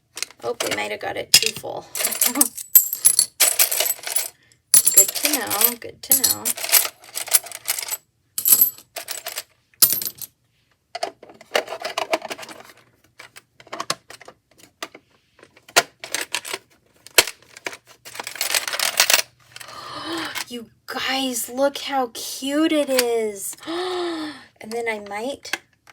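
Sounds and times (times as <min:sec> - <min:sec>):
plastic discs clicking and rattling: 0:11.0 - 0:19.1.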